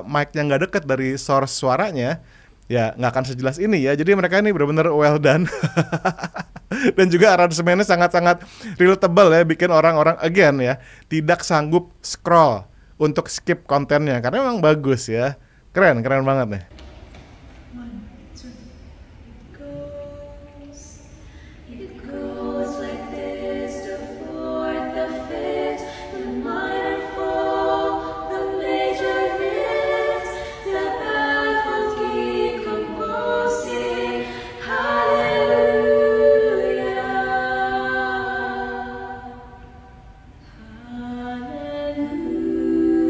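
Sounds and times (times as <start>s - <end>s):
voices singing in close harmony: 17.8s - 43.0s.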